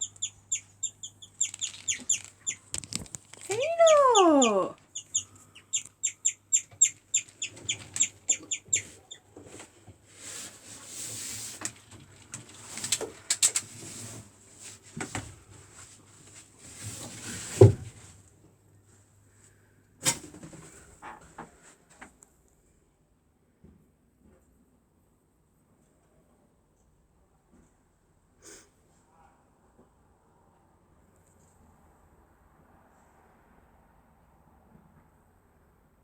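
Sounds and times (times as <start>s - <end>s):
guinea pig chirping: 0.0s - 9.2s
rustling: 0.0s - 18.2s.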